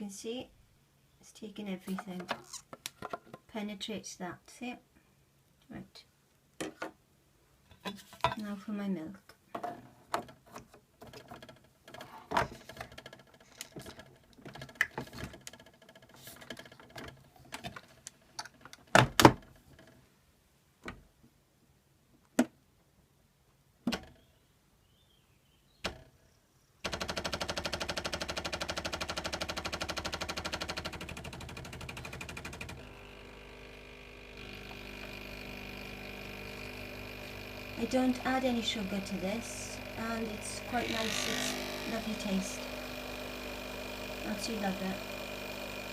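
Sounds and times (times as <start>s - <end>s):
coffee machine pump buzzing: 26.9s - 45.9s.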